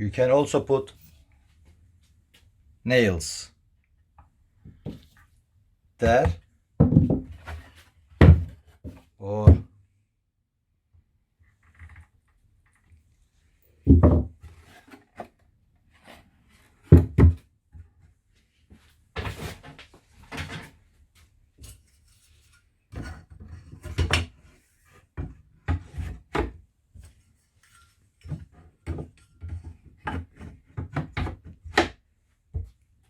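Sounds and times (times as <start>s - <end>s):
wooden knocks and clunks: 6.0s - 9.7s, 13.8s - 14.4s, 16.8s - 17.5s.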